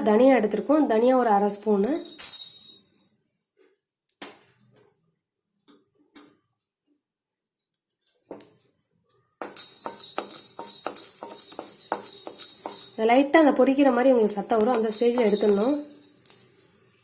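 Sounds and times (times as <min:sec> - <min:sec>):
seeds dropping into a pan: 0:01.8 - 0:03.0, 0:09.4 - 0:13.0, 0:14.5 - 0:16.5
spatula stirring seeds in a pan: 0:01.8 - 0:03.0, 0:09.4 - 0:16.7
spoon clinking against a pan: 0:09.4 - 0:13.1, 0:14.6 - 0:16.4.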